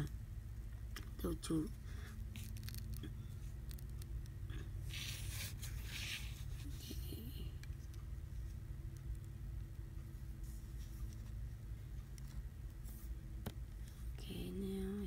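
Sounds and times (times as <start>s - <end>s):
steady low hum: 0.0s - 15.0s
adhesive tape tearing: 2.4s - 4.2s.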